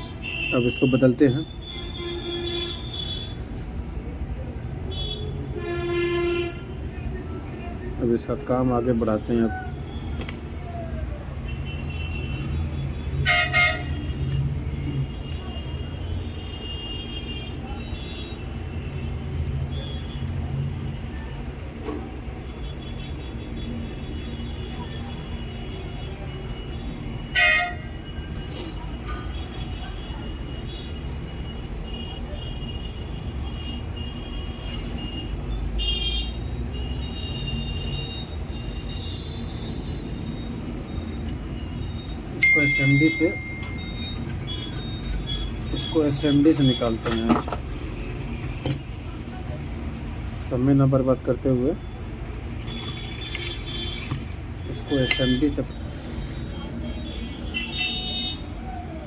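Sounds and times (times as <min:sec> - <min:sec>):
low rumble of traffic: 0:00.0 - 0:59.0
vehicle horn honking: 0:13.2 - 0:14.1, 0:27.3 - 0:28.0, 0:54.9 - 0:55.7
vehicle horn toots: 0:27.3 - 0:27.9.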